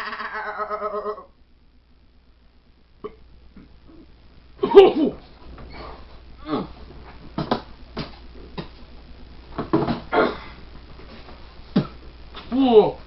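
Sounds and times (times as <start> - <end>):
person burping: 0.0 - 1.3, 3.0 - 4.0, 6.4 - 6.8, 10.1 - 10.6.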